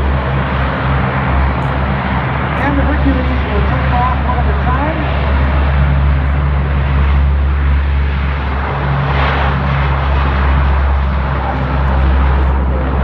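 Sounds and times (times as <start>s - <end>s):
broad rushing noise: 0.0s - 13.0s
propeller aircraft engines droning: 0.0s - 13.0s.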